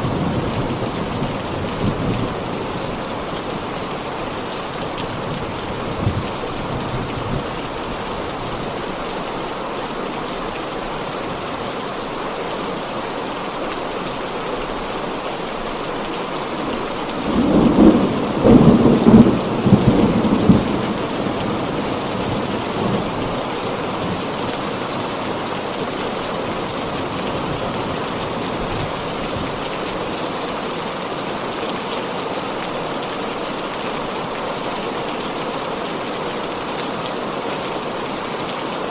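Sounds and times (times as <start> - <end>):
heavy rain: 0.0 - 38.9
thunder rolling: 16.7 - 29.5.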